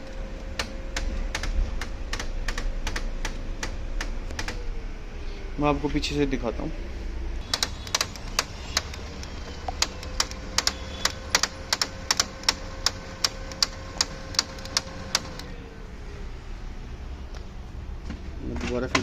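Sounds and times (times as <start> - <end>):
printer gears clicking and knocking: 0.0 - 4.6, 7.4 - 15.5, 18.5 - 19.0
printer motor hum: 0.0 - 5.2, 7.4 - 16.6.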